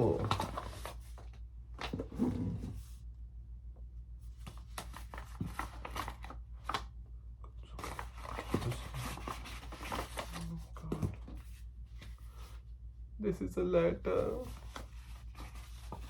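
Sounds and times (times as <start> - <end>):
packaging and clothing rustling: 0.0 - 2.8, 4.4 - 6.9, 7.7 - 12.6
steady low hum: 0.0 - 16.0.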